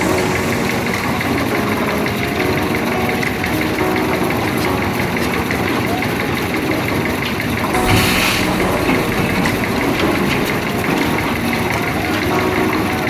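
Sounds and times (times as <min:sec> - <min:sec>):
concrete mixer engine running: 0:07.8 - 0:11.8
short rush of noise: 0:07.8 - 0:11.8.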